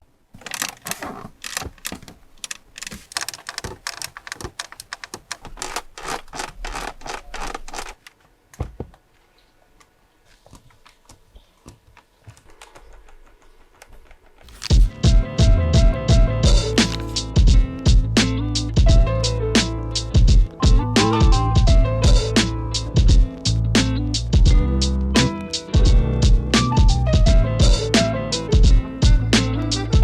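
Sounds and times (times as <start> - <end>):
plastic trim clicking and creaking: 0.4 - 8.2
music: 14.6 - 30.0.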